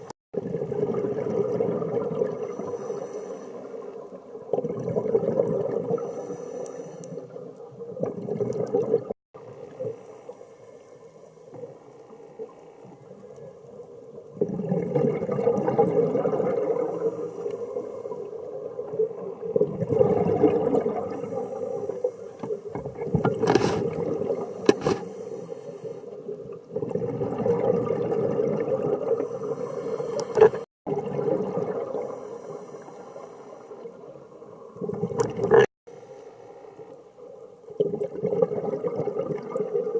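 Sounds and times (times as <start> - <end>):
exhaled bubbles underwater: 0.0 - 2.9, 3.6 - 6.2, 7.1 - 9.9, 11.6 - 24.7, 26.1 - 32.4, 33.7 - 35.7, 37.6 - 39.9.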